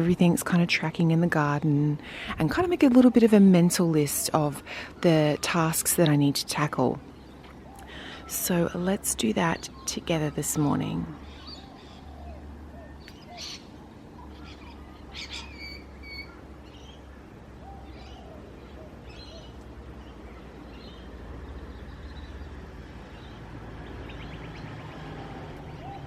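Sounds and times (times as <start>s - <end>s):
steady low hum: 0.0s - 26.0s
birds chirping and whistling: 9.5s - 22.4s, 23.2s - 26.0s.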